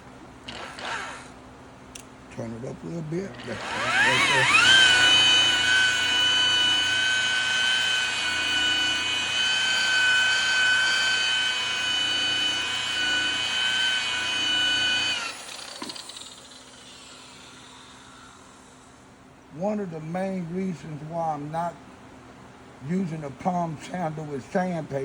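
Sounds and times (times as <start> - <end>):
rotary buffer motor whine: 0.4 - 1.4, 2.8 - 19.2.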